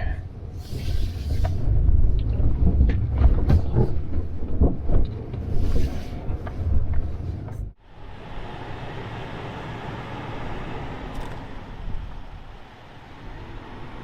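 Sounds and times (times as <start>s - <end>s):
truck engine rumbling: 0.0s - 14.0s
vehicle knocks and rattles: 1.6s - 5.6s.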